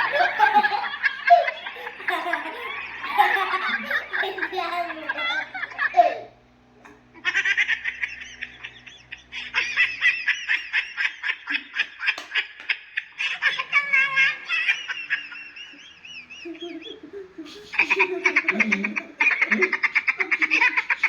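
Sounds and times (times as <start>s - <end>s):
squeaky laugh-like sound effect: 13.3s - 21.0s.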